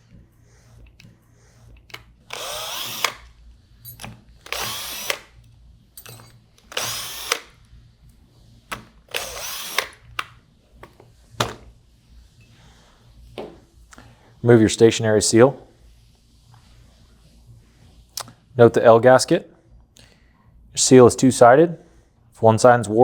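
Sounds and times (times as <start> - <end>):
cordless driver spinning: 1.8 - 3.3, 3.9 - 5.4, 6.0 - 7.6, 8.7 - 10.2
metal bolts clicking: 3.9 - 5.2, 6.0 - 7.4.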